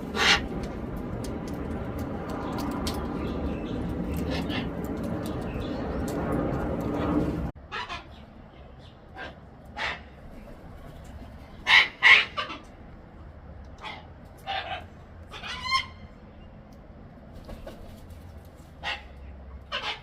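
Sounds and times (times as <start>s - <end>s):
cockatoo squawking: 0.1s - 0.5s, 7.6s - 8.2s, 11.6s - 12.7s, 13.8s - 16.1s, 18.8s - 20.0s.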